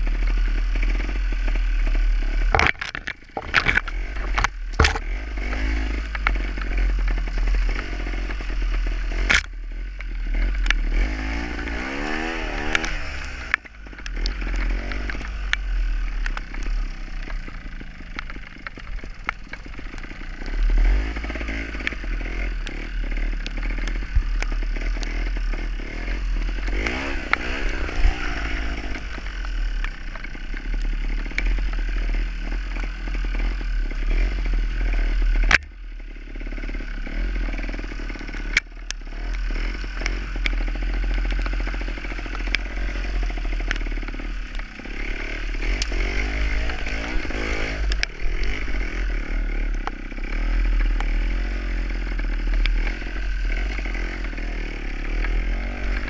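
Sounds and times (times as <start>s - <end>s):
motorcycle engine revving: 0.0s - 56.0s
bike knocks and clatter: 2.5s - 6.3s.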